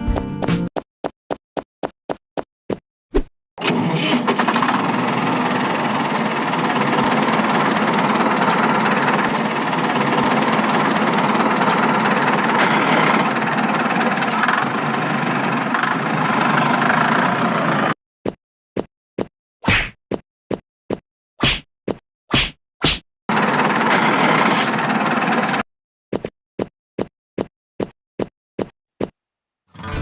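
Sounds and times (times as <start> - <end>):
motor running steadily: 4.3 - 18.0, 23.3 - 25.6.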